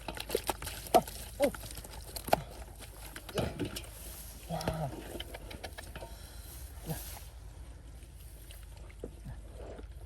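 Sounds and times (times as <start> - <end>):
splashing in muddy water: 0.0 - 5.8.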